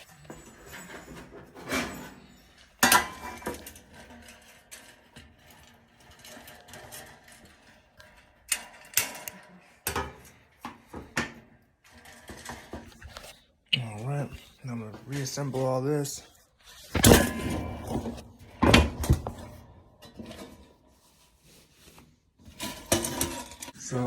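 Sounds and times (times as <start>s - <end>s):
hand tools clicking and clattering: 0.0s - 13.4s.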